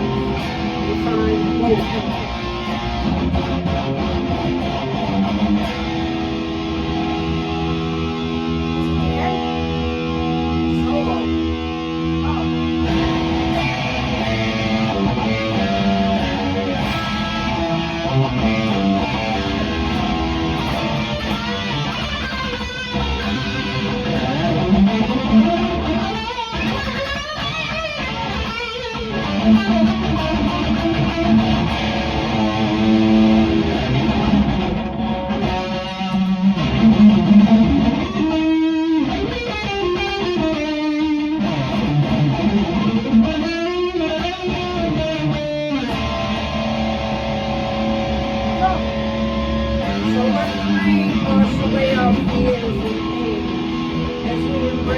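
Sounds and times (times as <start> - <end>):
bass line: 0.0 - 25.2, 46.0 - 54.9
electric guitar bending notes: 0.0 - 54.9.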